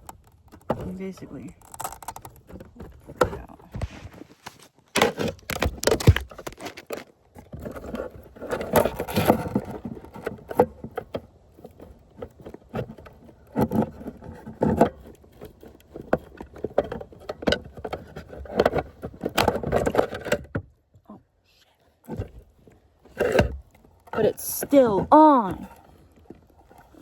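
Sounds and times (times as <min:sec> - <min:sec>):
clicks and knocks of plastic parts: 0:00.0 - 0:21.1.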